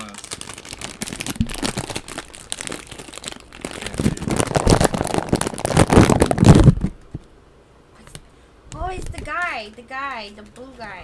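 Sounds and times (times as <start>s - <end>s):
plastic wrapper crinkling: 0.0s - 7.3s.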